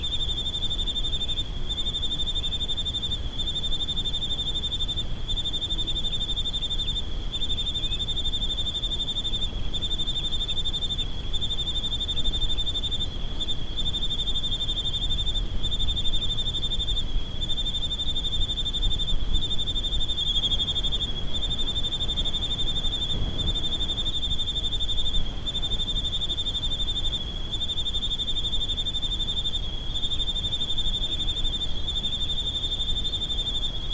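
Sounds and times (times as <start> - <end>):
insect trilling: 0.0 - 33.9
low wind rumble: 18.1 - 26.1.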